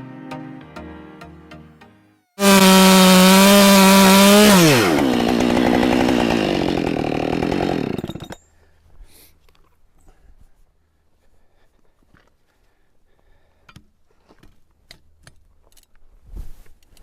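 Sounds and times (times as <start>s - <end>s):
chainsaw running: 2.4s - 8.4s.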